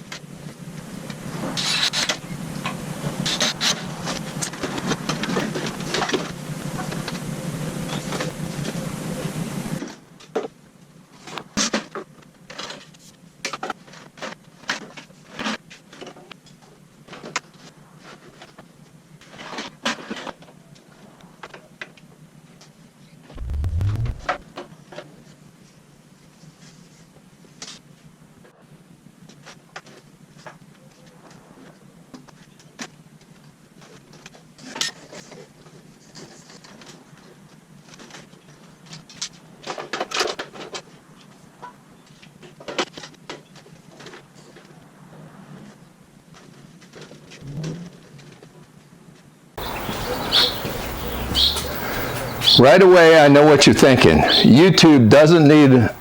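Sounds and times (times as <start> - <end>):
dull low thump: 23.4 - 24.4.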